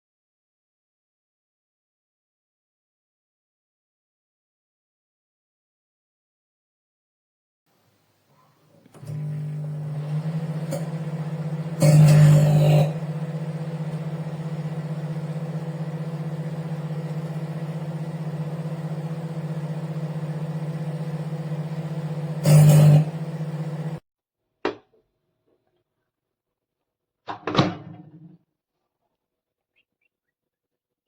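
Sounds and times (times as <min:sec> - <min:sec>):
microwave oven humming: 0:08.8 - 0:24.0
microwave click: 0:09.0 - 0:24.0.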